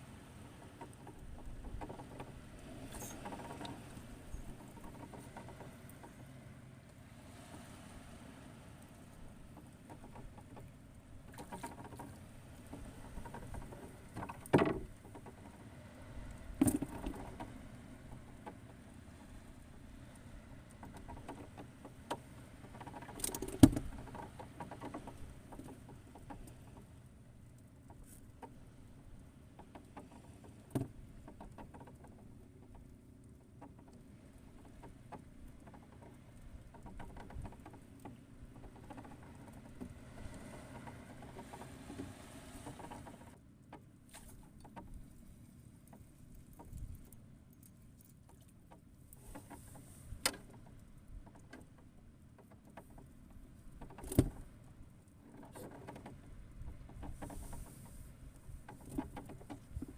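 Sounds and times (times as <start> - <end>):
faint patter and handling noises: 29.6 - 59.9.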